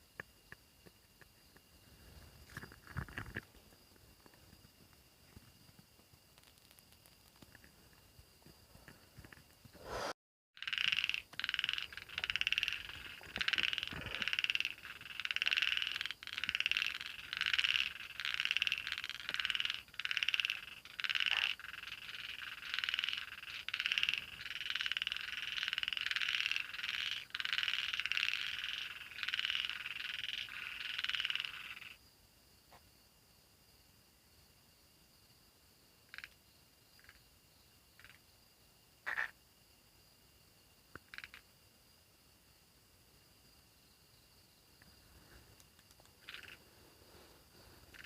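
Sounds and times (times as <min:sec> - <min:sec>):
frogs croaking: 0:00.0 - 0:09.4, 0:10.6 - 0:33.0, 0:35.8 - 0:40.1, 0:40.8 - 0:41.7, 0:43.5 - 0:48.0.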